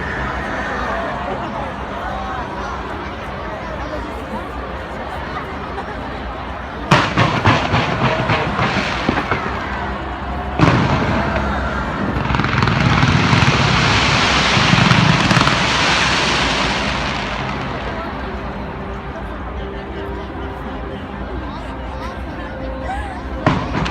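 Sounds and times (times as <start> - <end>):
loud firework boom: 6.9 - 18.0
fireworks bangs and crackle: 6.9 - 18.6, 23.4 - 23.9
dense crackling hiss: 6.9 - 19.3.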